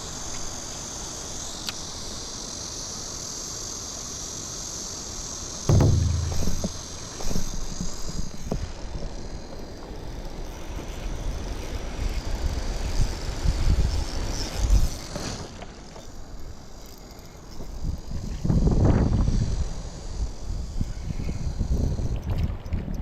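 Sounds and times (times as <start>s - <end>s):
cicadas buzzing: 0.0s - 22.4s
faint knocks: 5.7s - 7.0s.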